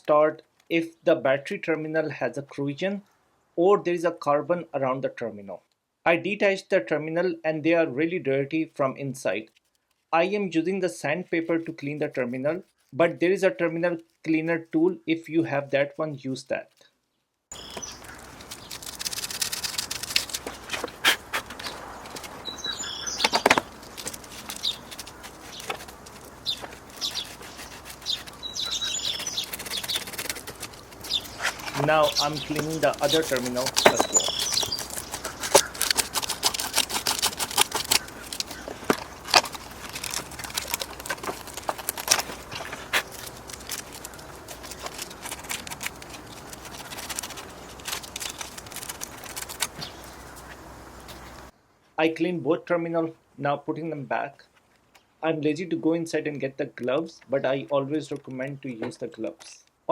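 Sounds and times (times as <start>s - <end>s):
birds chirping: 17.5s - 51.6s
sandpaper scraping metal: 17.7s - 51.3s.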